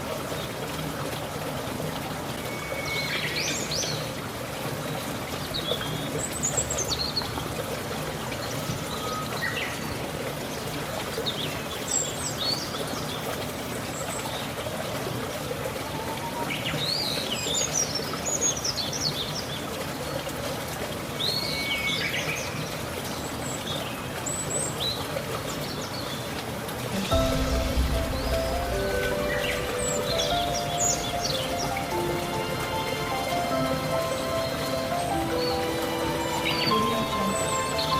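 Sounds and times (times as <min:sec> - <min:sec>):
trickling water: 0:00.0 - 0:37.9
birds chirping: 0:27.0 - 0:37.9.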